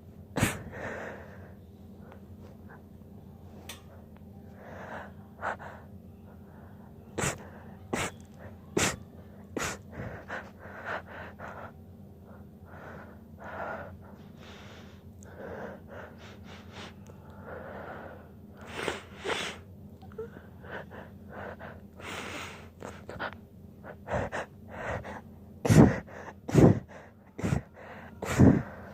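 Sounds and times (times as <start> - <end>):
gasping wheezy breaths: 0.4 - 2.9, 4.6 - 28.9
woman's stifled sneezes: 8.0 - 8.2, 8.8 - 9.0, 25.7 - 27.6.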